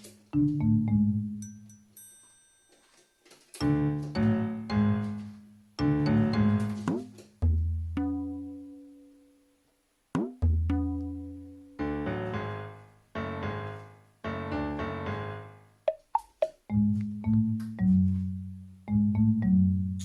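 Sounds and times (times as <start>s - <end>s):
plucked string music: 10.4s - 12.2s.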